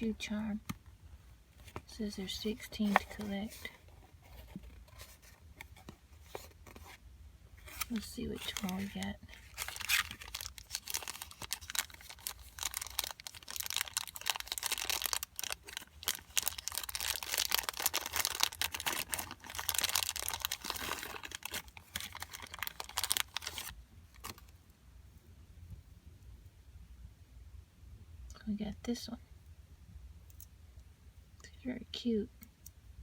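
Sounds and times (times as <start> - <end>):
plastic packaging crinkling: 1.6 - 7.0, 7.6 - 24.6.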